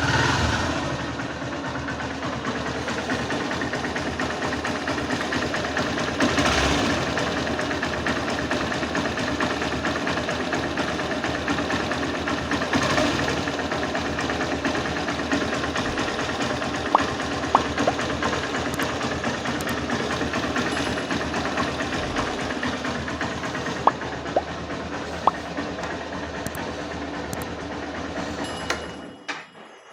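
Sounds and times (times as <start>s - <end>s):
motorcycle engine idling: 0.1s - 28.9s
sharp clicks: 19.6s - 19.8s.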